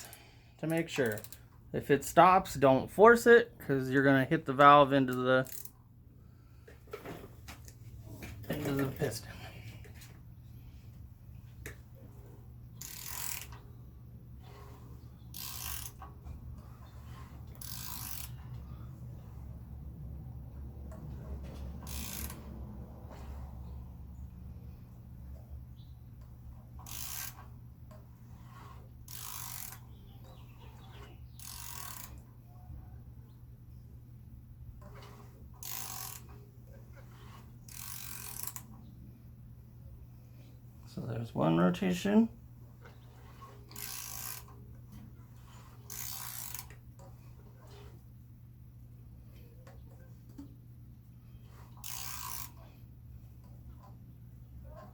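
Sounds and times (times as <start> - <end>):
ratchet wrench clicking: 0.0 - 1.4, 5.4 - 5.8, 12.8 - 13.6, 15.3 - 16.1, 17.5 - 18.5, 21.8 - 22.6, 26.8 - 27.5, 28.5 - 29.9, 31.4 - 32.2, 35.6 - 36.3, 37.7 - 38.7, 43.7 - 44.6, 45.9 - 46.8, 51.7 - 52.6.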